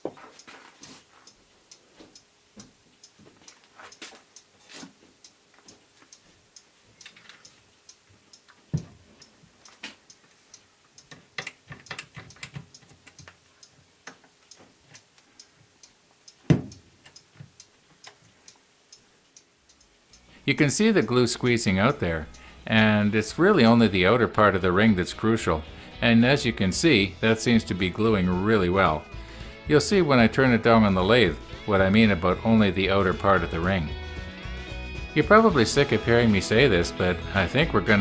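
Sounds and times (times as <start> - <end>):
clock ticking: 0.0 - 0.6, 1.2 - 33.9, 35.2 - 38.0
louder knocks: 16.5 - 16.8.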